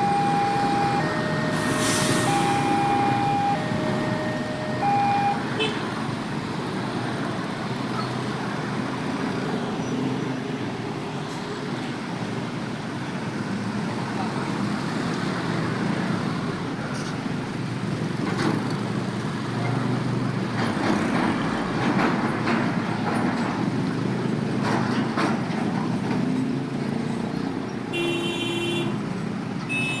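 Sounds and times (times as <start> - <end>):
road traffic: 0.0 - 30.0
vehicle horn toot: 4.8 - 5.8, 27.9 - 29.0, 29.7 - 30.0.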